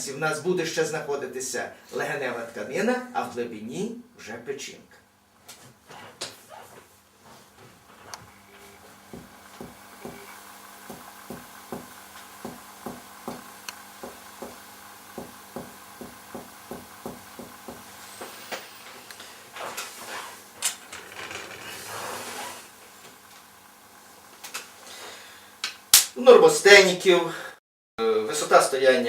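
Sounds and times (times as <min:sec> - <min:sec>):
rustling: 0:19.2 - 0:22.8.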